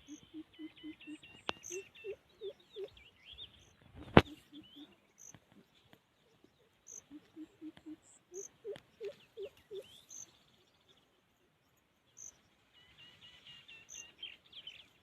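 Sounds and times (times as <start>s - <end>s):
birds chirping: 0.0s - 15.0s.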